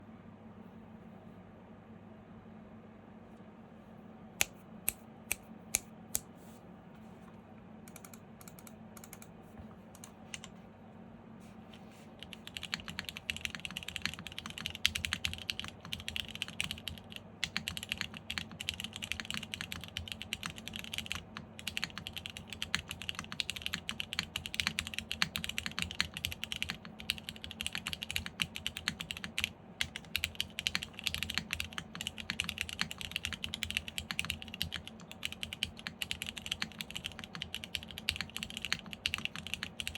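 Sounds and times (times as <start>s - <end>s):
faint steady hum: 0.0s - 39.9s
mechanical keyboard typing: 7.9s - 9.3s, 10.0s - 10.5s, 12.2s - 39.9s.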